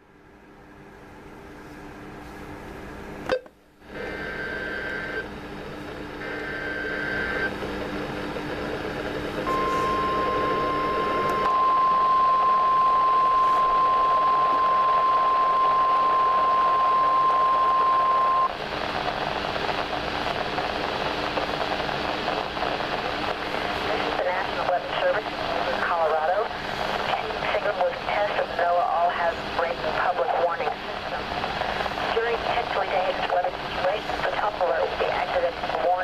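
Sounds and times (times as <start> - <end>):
radio hiss: 3.8 - 36.0
steady warning alarm tone: 9.4 - 18.6.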